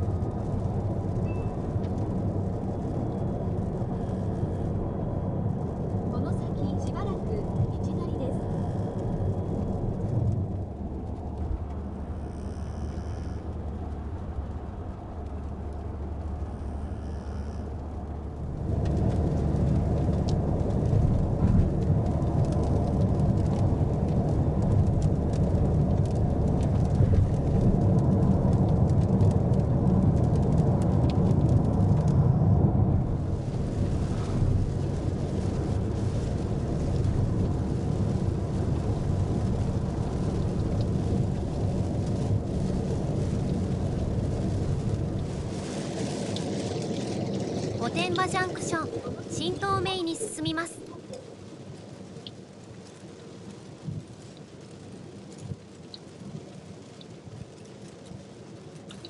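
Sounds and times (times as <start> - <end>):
raindrops hitting car: 0.0 - 59.0
tyres rumbling on wet road: 0.0 - 59.0.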